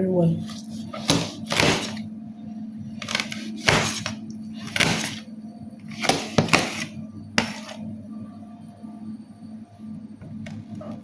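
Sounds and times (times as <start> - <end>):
faint background music: 0.0 - 11.0
knife chopping on cutting board: 0.8 - 2.0, 3.0 - 5.2, 6.0 - 7.8.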